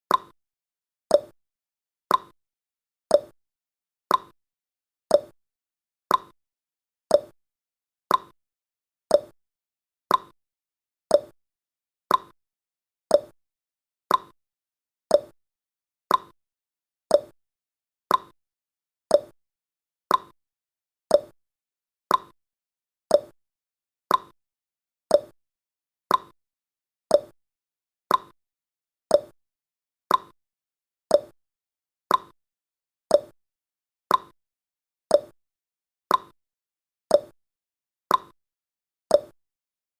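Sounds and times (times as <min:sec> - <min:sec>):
clock ticking: 0:00.1 - 0:00.3, 0:01.1 - 0:01.3, 0:02.1 - 0:02.3, 0:03.1 - 0:03.3, 0:04.1 - 0:04.3, 0:05.1 - 0:05.3, 0:06.1 - 0:06.3, 0:07.1 - 0:07.3, 0:08.1 - 0:08.3, 0:09.1 - 0:09.3, 0:10.1 - 0:10.3, 0:11.1 - 0:11.3, 0:12.1 - 0:12.3, 0:13.1 - 0:13.3, 0:14.1 - 0:14.3, 0:15.1 - 0:15.3, 0:16.1 - 0:16.3, 0:17.1 - 0:17.3, 0:18.1 - 0:18.3, 0:19.1 - 0:19.3, 0:20.1 - 0:20.3, 0:21.1 - 0:21.3, 0:22.1 - 0:22.3, 0:23.1 - 0:23.3, 0:24.1 - 0:24.3, 0:25.1 - 0:25.3, 0:26.1 - 0:26.3, 0:27.1 - 0:27.3, 0:28.1 - 0:28.3, 0:29.1 - 0:29.3, 0:30.1 - 0:30.4, 0:31.1 - 0:31.3, 0:32.1 - 0:32.4, 0:33.1 - 0:33.4, 0:34.1 - 0:34.4, 0:35.1 - 0:35.4, 0:36.1 - 0:36.4, 0:37.1 - 0:37.4, 0:38.1 - 0:38.4, 0:39.1 - 0:39.4.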